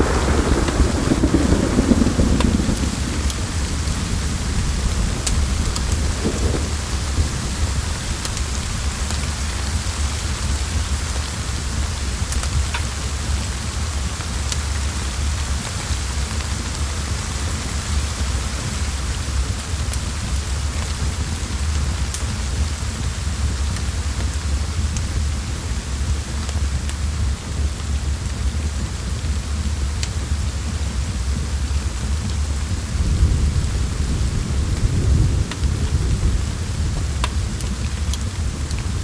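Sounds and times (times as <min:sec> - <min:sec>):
low continuous rumble: 0:00.0 - 0:39.0
steady rain: 0:00.0 - 0:39.0.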